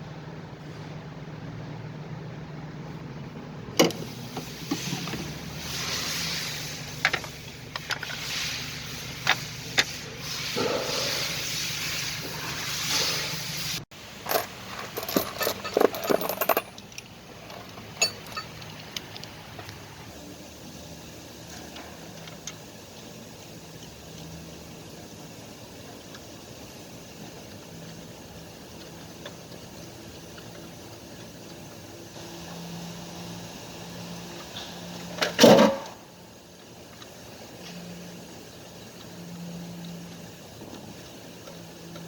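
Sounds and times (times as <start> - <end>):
metal tools clinking and clanking: 14.2 - 19.3.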